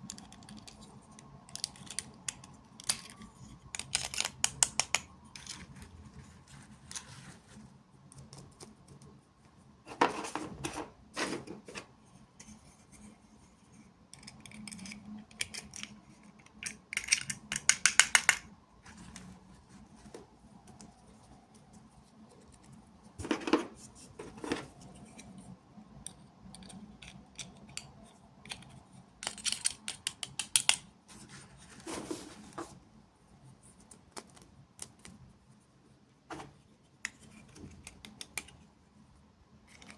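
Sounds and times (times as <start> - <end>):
toy packaging being opened: 1.5 - 5.8.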